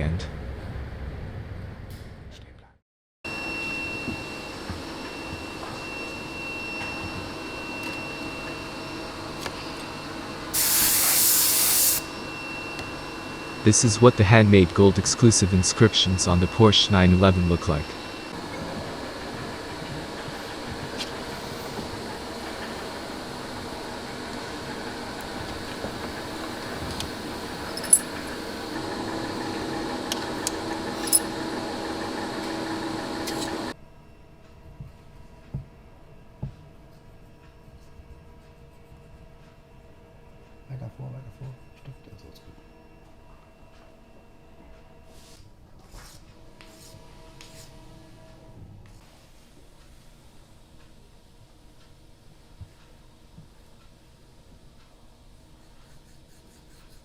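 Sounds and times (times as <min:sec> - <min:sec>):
faint high whine: 0:03.3 - 0:33.8
workshop hum: 0:03.3 - 0:33.8, 0:44.5 - 0:50.6
compressed air hissing: 0:10.6 - 0:12.1.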